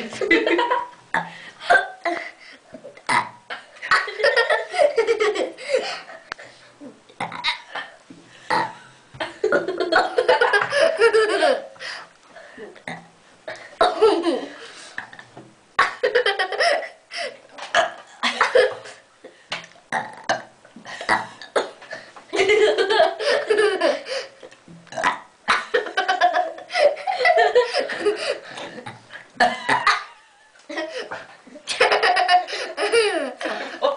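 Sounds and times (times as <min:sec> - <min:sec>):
people burping: 0:03.0 - 0:03.7, 0:07.2 - 0:10.8, 0:19.9 - 0:21.8, 0:24.9 - 0:25.6, 0:28.0 - 0:30.2.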